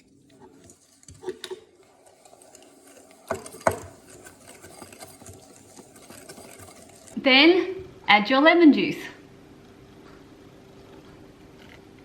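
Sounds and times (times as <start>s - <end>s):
whisk rattling in a bowl: 0.0s - 7.2s.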